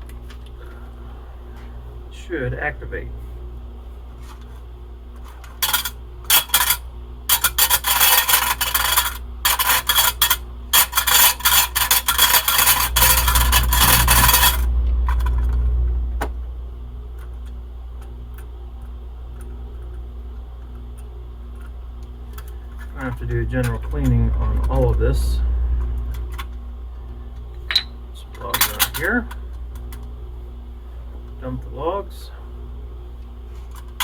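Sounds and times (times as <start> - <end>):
low hum: 11.7 - 19.2, 22.8 - 31.4.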